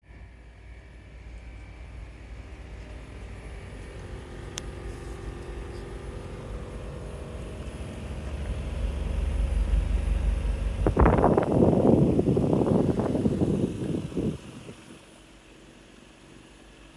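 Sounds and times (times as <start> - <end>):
heat pump humming: 0.1 - 16.9
low rumble: 6.2 - 15.0.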